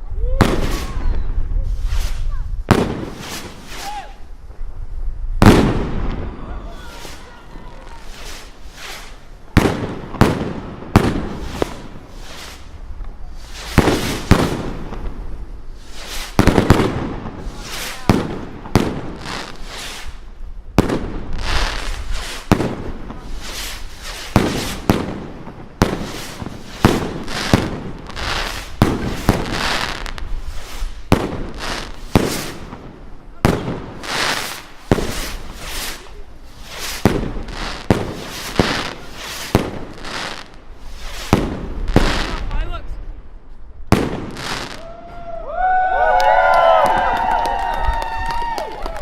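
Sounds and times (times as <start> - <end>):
fireworks bursting: 0.0 - 49.0.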